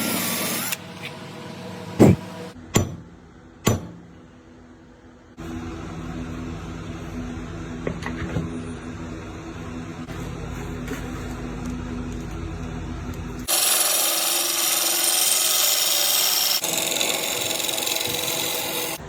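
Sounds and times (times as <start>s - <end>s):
sharp knocks: 2.0s - 4.0s
wood lathe motor hum: 13.4s - 19.0s.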